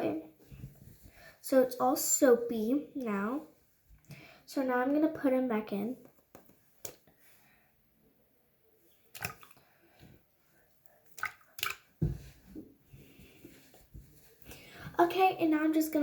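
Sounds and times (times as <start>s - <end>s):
toys splashing into water: 9.2s - 9.6s.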